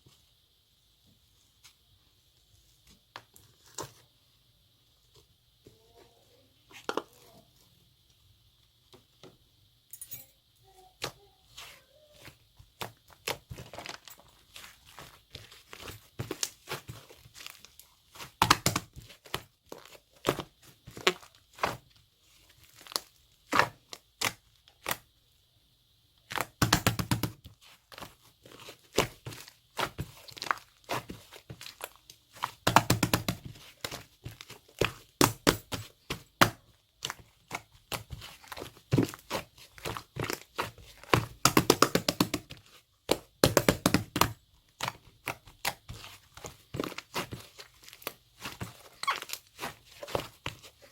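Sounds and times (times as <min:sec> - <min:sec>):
slime squeezed with sticky crackles: 0:44.8 - 0:50.9.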